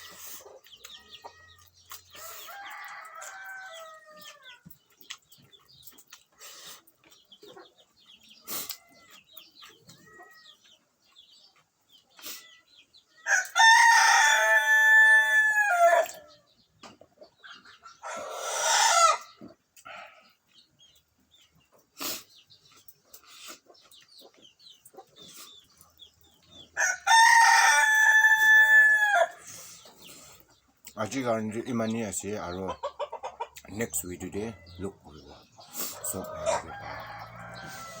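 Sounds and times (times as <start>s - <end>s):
harsh rooster call: 13.2s - 16.2s, 18.0s - 19.3s, 26.8s - 29.5s, 35.7s - 38.0s
rooster crowing: 13.2s - 16.2s, 26.8s - 29.4s, 36.1s - 38.0s.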